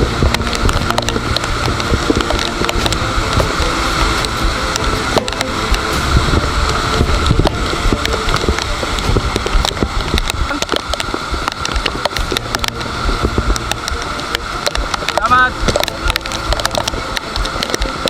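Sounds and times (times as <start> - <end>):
bike rattles and clicks: 0.0 - 18.0
bike tyres on wet road: 0.0 - 18.0
rain: 0.0 - 18.0
wind on microphone: 0.0 - 18.0.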